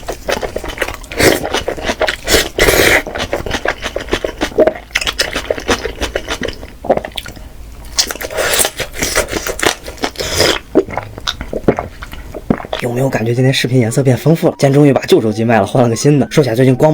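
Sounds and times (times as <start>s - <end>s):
person chewing food: 0.0s - 12.9s.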